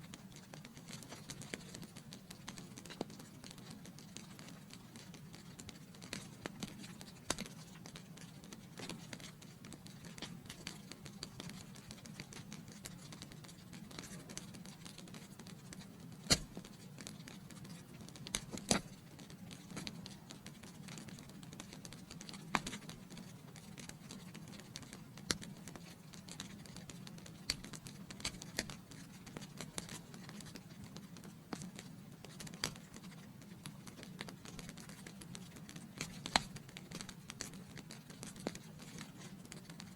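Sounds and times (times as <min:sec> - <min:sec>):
fire crackling and popping: 0:15.8 - 0:16.8.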